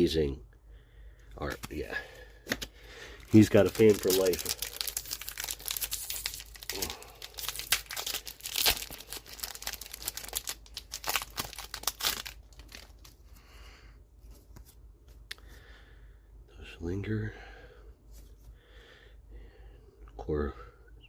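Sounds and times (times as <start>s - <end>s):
foil wrapper crinkling and tearing: 1.5s - 13.2s.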